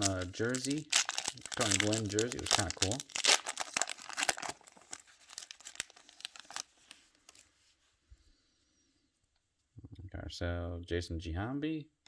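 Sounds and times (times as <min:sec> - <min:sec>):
wrapper tearing and crinkling: 0:00.0 - 0:07.5.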